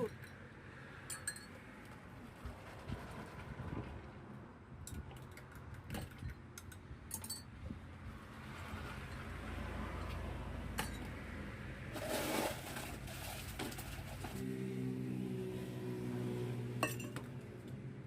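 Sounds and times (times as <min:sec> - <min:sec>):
cups and utensils clinking: 0:16.8 - 0:17.3.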